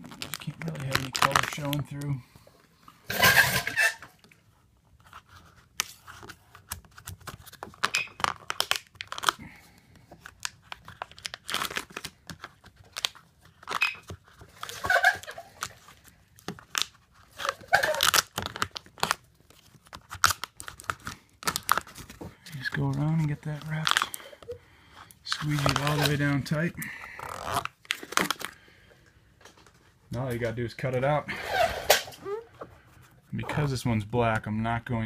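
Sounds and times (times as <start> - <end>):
squeegee scraping vinyl film: 16.7 - 19.2, 25.3 - 28.4.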